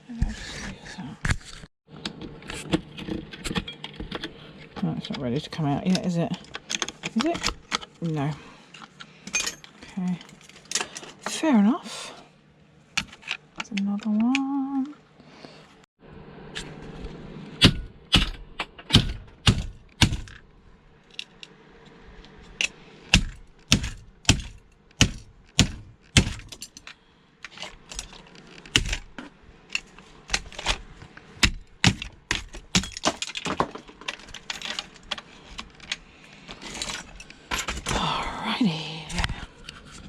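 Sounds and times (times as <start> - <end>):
metal clicks and knocks of tools: 5.8 - 8.0, 24.6 - 30.8.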